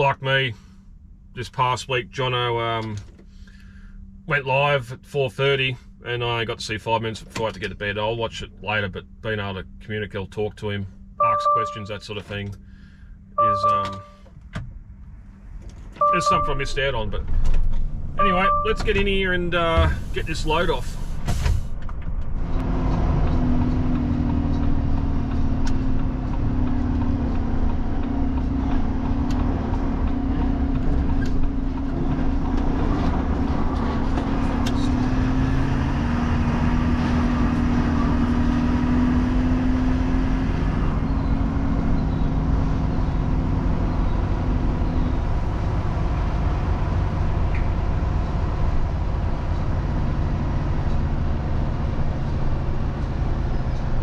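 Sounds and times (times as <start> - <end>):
diesel truck engine rumbling: 0.0 - 54.0
droning hum: 0.4 - 22.7.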